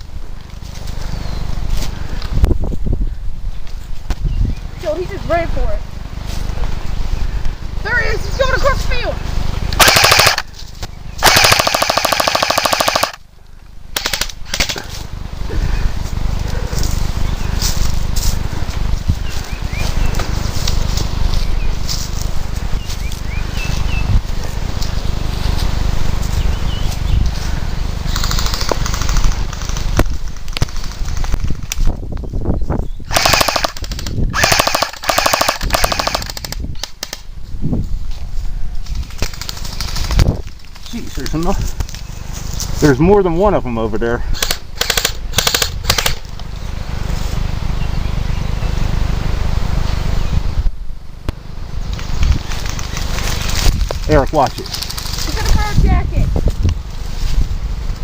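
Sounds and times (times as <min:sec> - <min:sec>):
airsoft rifle firing full auto: 0:09.8 - 0:10.5, 0:11.2 - 0:13.2, 0:33.1 - 0:37.2, 0:44.4 - 0:46.2.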